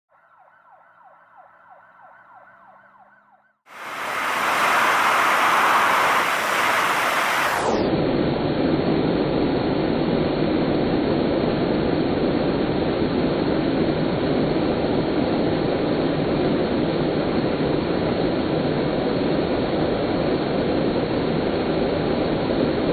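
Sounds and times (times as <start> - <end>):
vacuum rushing air: 3.7 - 8.2.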